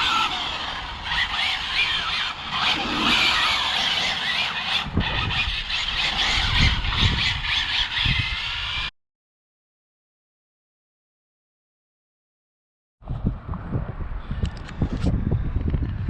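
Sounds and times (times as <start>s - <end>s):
electric motor whine: 0.0s - 8.9s.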